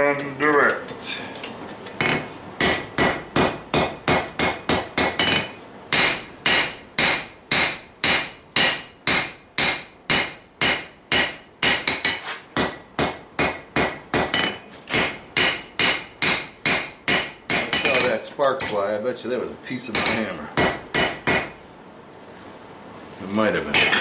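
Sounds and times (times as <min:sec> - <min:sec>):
hammer striking steel on anvil: 0:02.0 - 0:18.8.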